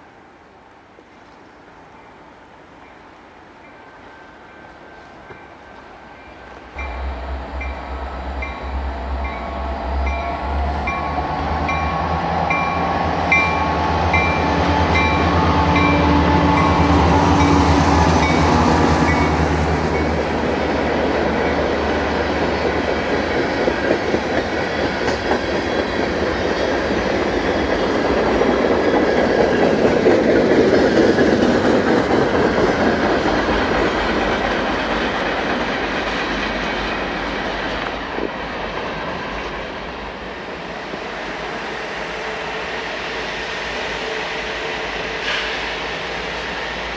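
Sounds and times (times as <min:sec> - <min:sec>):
railcar wheel clatter: 0:00.9 - 0:46.9
locomotive bell dinging: 0:02.8 - 0:20.2.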